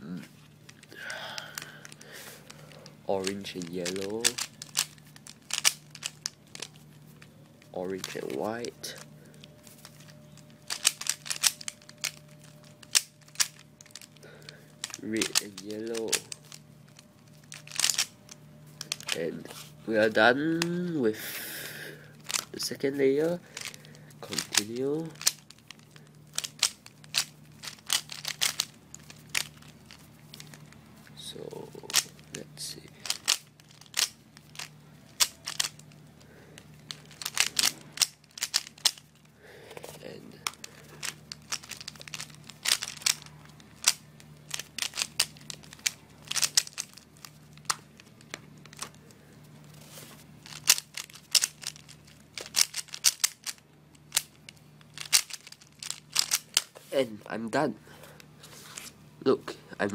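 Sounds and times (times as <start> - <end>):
speed cube clicking: 2.8 - 6.7, 9.8 - 14.2, 14.8 - 18.2, 18.8 - 19.2, 22.2 - 22.5, 24.4 - 30.0, 33.0 - 35.9, 36.9 - 39.1, 40.4 - 47.9, 50.4 - 56.7.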